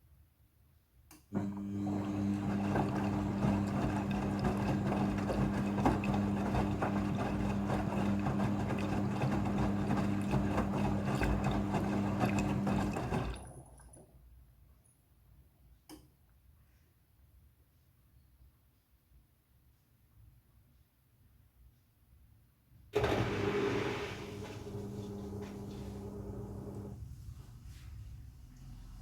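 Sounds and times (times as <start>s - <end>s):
washing machine motor humming: 1.4s - 14.0s, 23.0s - 27.0s.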